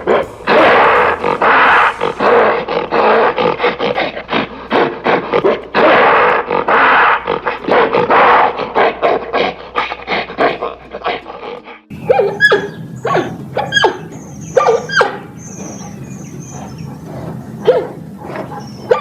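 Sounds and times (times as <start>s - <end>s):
big cat roaring: 0.0s - 10.7s.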